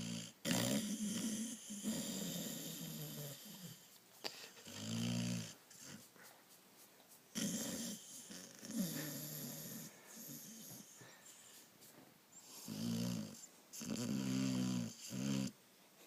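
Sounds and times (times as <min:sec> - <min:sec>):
person snoring: 0:07.4 - 0:10.8.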